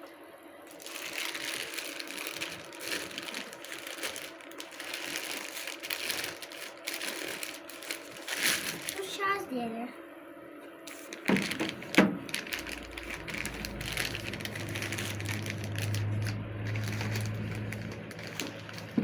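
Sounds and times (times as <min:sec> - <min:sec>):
low electrical hum: 0:00.0 - 0:19.0
rustling: 0:10.9 - 0:19.0.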